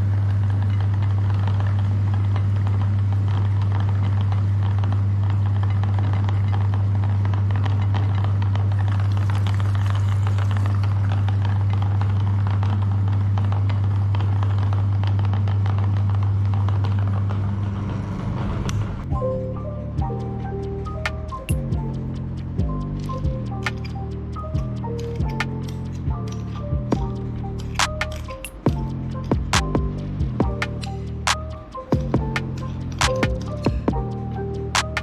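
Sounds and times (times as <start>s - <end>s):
meat grinder motor humming: 0.0s - 18.3s
crackling and rattling material: 0.0s - 19.1s, 20.7s - 35.0s.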